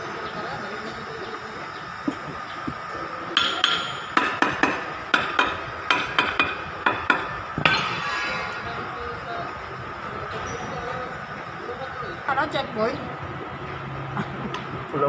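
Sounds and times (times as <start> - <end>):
hammer striking metal: 3.4 - 9.1.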